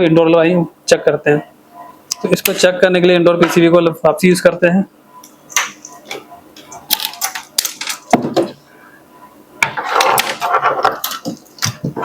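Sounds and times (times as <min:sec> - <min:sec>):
circuit boards clattering: 0:05.5 - 0:08.6, 0:09.6 - 0:12.0.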